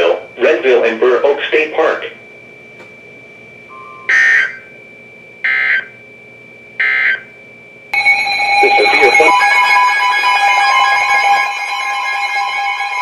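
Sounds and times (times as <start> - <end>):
faint steady high tone: 3.7 - 4.8, 8.0 - 13.0
warbling digital data tones: 3.7 - 4.8, 8.0 - 13.0.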